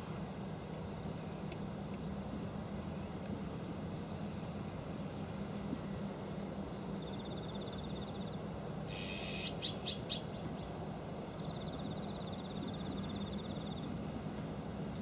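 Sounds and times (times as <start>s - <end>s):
steady low hum: 0.0s - 15.0s
magpie harsh raspy calls: 8.9s - 10.3s.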